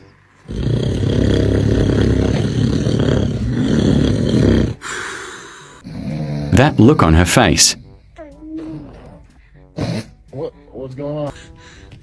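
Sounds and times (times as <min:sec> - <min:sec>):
man snoring loudly: 0:00.4 - 0:07.2.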